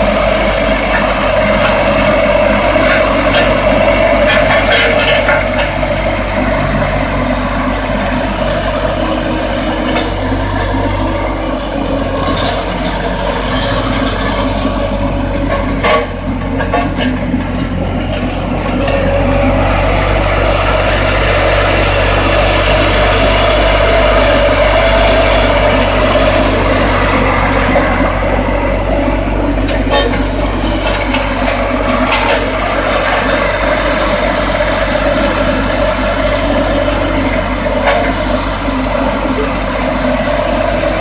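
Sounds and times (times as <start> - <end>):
diesel engine running: 0.0 - 41.0.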